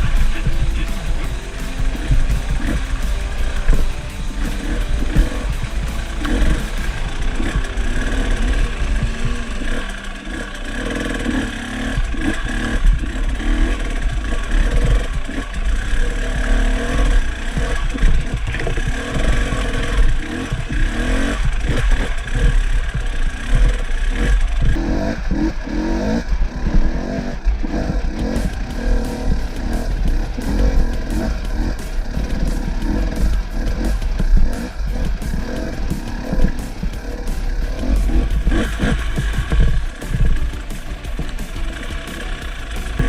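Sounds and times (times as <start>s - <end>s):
knocks and clatter: 0.0s - 10.2s, 26.6s - 43.0s
motorcycle engine revving: 0.0s - 43.0s.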